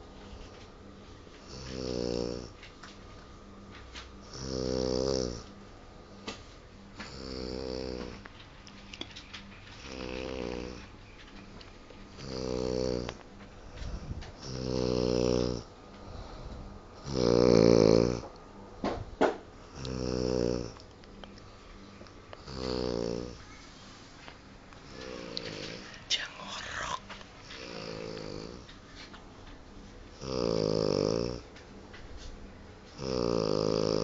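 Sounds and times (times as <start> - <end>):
man snoring heavily: 1.5 - 2.5, 4.3 - 5.4, 7.1 - 8.1, 12.2 - 13.2, 14.4 - 15.7, 17.0 - 18.2, 19.7 - 20.8, 22.4 - 23.4, 27.6 - 28.6, 30.2 - 31.4, 33.0 - 34.0.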